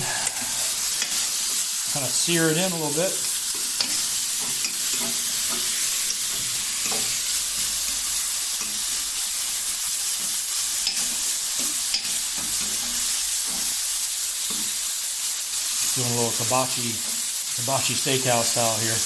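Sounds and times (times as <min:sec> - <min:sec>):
steak sizzling in a skillet: 0:00.0 - 0:19.0
utensil clicking against pan: 0:00.2 - 0:01.4, 0:03.4 - 0:09.3, 0:10.1 - 0:14.8.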